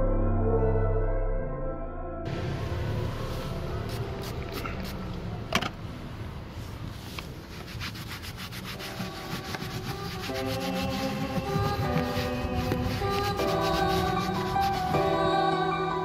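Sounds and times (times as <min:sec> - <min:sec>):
music: 0:00.0 - 0:04.8, 0:08.7 - 0:16.0
sock scrubbing car trim: 0:03.4 - 0:05.0, 0:06.8 - 0:15.1.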